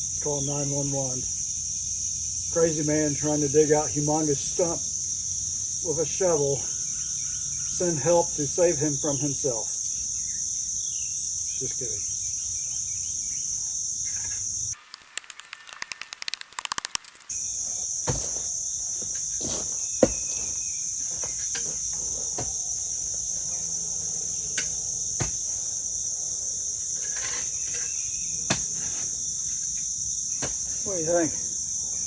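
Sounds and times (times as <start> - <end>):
crickets chirring: 0.0 - 32.0
quick run of clicks: 14.8 - 17.3.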